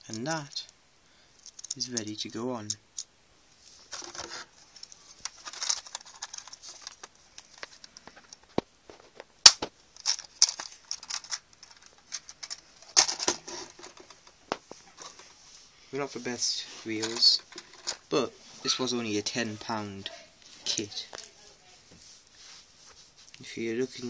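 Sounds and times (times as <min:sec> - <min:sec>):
plastic parts clicking and rustling: 0:00.0 - 0:00.7, 0:01.4 - 0:03.1, 0:03.8 - 0:15.4, 0:16.5 - 0:18.1.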